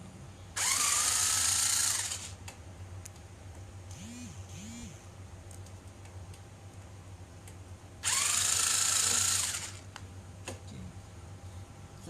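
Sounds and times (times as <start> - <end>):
cordless screwdriver whirring: 0.6 - 2.4, 8.0 - 9.8.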